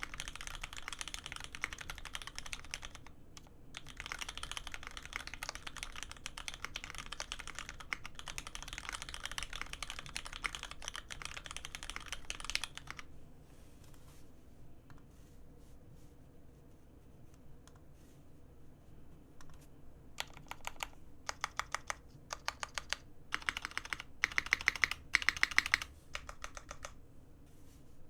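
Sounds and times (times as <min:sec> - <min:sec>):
mechanical keyboard typing: 0:00.0 - 0:13.1, 0:20.2 - 0:27.0.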